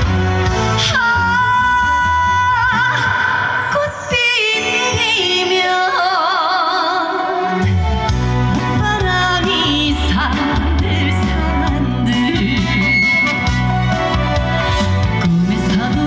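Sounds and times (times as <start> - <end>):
backing track with bass and drums: 0.0 - 3.0, 7.6 - 16.0
woman singing with vibrato: 0.8 - 7.6, 8.7 - 13.5, 15.1 - 16.0.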